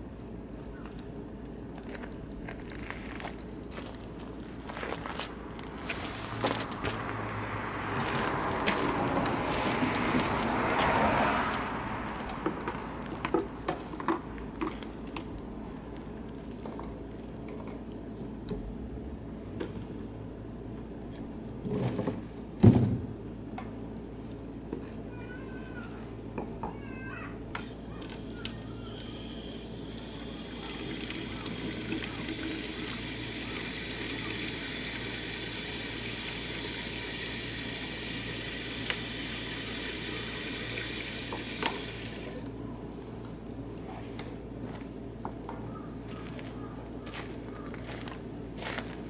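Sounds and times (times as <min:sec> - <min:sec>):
high hiss from fire: 0:00.0 - 0:45.7
wood fire crackling: 0:00.0 - 0:49.0.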